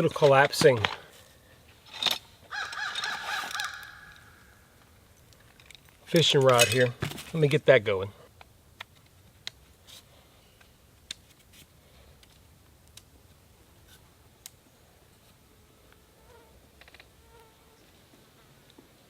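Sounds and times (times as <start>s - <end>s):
flying insect buzzing: 15.5s - 17.9s.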